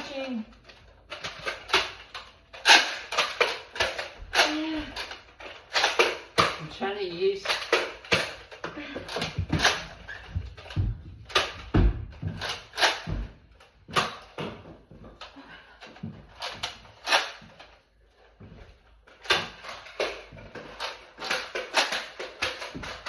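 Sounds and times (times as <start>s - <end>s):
toy blaster clicks and clacks: 20.8s - 23.0s.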